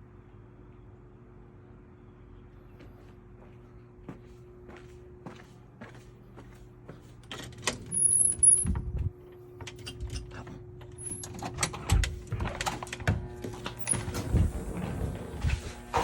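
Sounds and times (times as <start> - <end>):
footsteps: 2.8 - 7.3, 13.2 - 16.0
doors knocking and thumping: 11.3 - 16.0.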